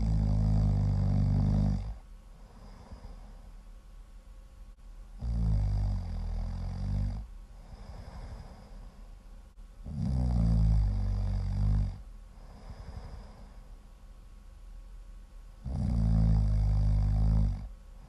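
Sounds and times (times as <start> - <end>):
loud low snoring: 0.0 - 3.4, 5.2 - 8.9, 9.8 - 13.6, 15.6 - 17.7
quiet breathing: 0.0 - 3.9, 5.4 - 14.2, 15.6 - 18.0.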